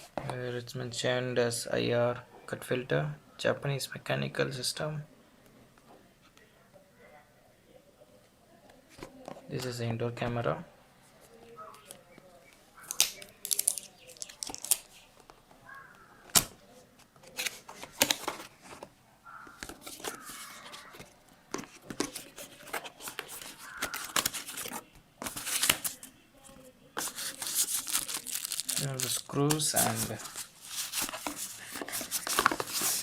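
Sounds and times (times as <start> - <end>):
packaging crinkling and tearing: 12.8 - 15.0, 21.7 - 26.1, 27.0 - 33.0.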